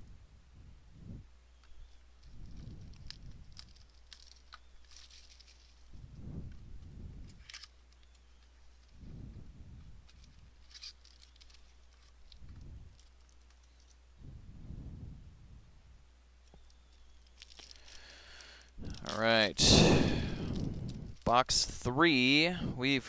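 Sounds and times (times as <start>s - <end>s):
packaging rustles and clicks: 1.6s - 6.0s, 10.1s - 14.0s, 16.4s - 19.3s.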